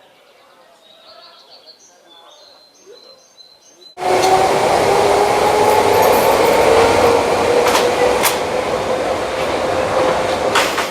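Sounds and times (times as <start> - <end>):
rail car rumbling with whine: 4.0 - 10.9.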